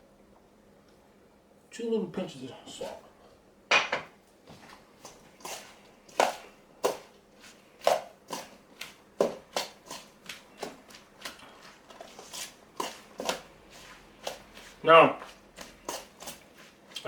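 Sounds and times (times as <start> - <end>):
utensil mixing food in bowl: 2.4 - 3.4, 4.5 - 17.0.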